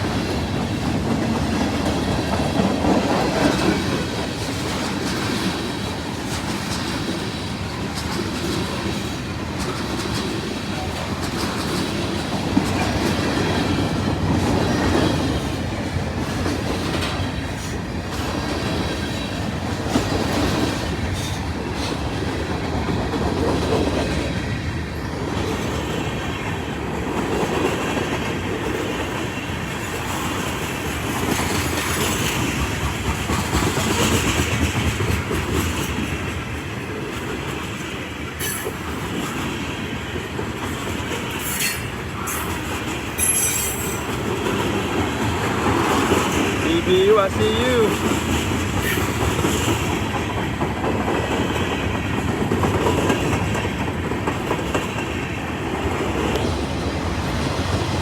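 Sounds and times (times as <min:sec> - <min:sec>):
freight train cars rumbling past: 0:00.0 - 0:58.0
wheels clacking over rail joints: 0:00.0 - 0:58.0
high wheel squeal: 0:43.2 - 0:44.1.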